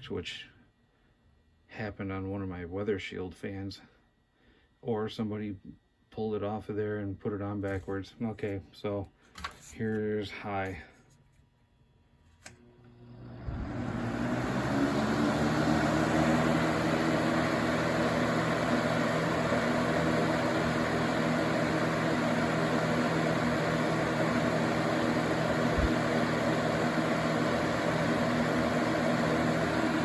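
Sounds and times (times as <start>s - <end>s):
box fan whirring: 12.3s - 30.0s
low motor hum: 12.6s - 30.0s.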